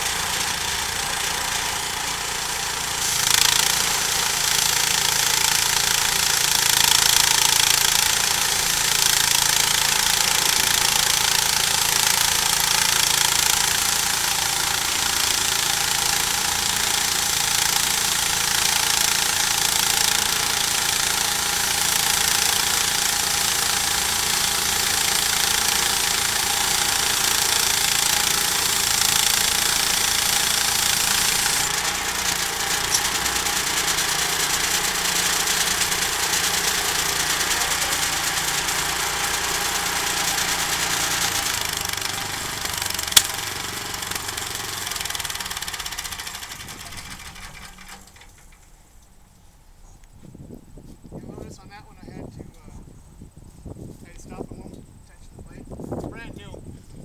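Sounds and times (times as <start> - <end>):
blade hissing through wood: 0.0 - 38.4, 40.8 - 44.8
sawmill engine under load: 0.0 - 48.8.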